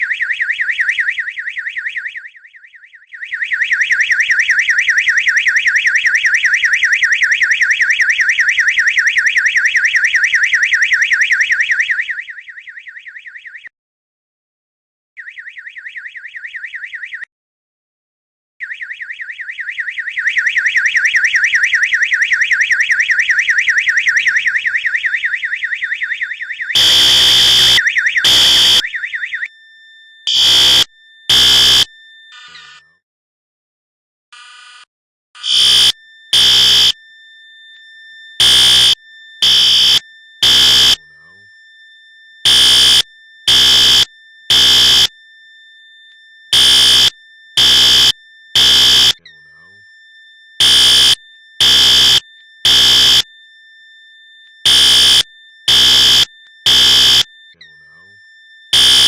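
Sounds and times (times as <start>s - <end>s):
fire alarm warbling tone: 0.0s - 13.7s, 18.6s - 32.6s, 35.4s - 59.0s
harsh alarm tone: 20.5s - 32.8s, 35.4s - 59.0s.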